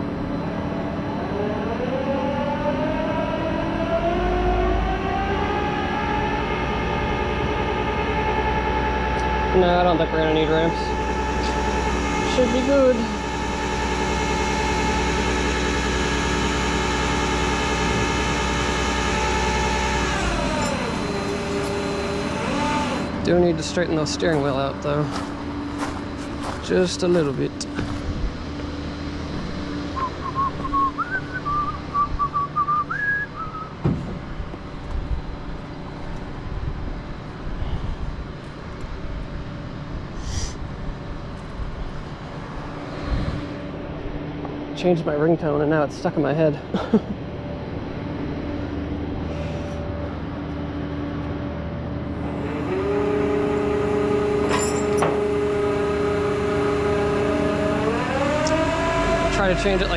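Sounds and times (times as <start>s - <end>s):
low vehicle hum: 0.0s - 59.9s
steady high whine: 0.0s - 59.9s
man whistling a tune: 30.0s - 33.8s.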